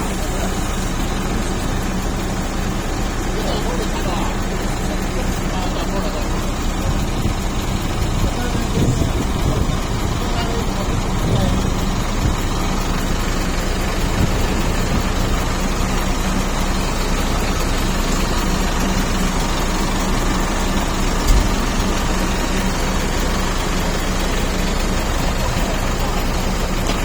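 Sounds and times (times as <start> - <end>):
bulldozer diesel engine running: 0.0 - 27.0
thump: 21.2 - 21.6.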